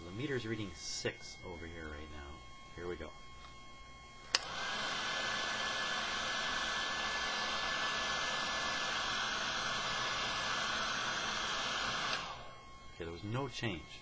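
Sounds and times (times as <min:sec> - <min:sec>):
high motor whine: 0:00.0 - 0:14.0
heat gun switch click: 0:04.2 - 0:04.6
heat gun blowing air: 0:04.2 - 0:14.0.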